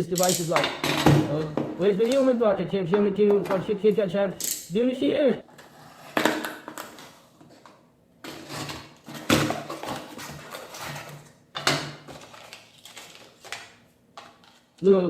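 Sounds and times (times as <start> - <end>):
packaging rustling and crinkling: 8.3 - 11.3, 12.0 - 14.8.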